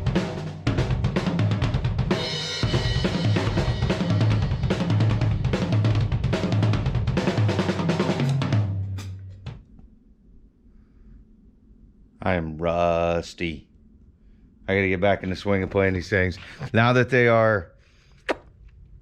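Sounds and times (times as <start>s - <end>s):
drum kit playing: 0.0s - 9.6s.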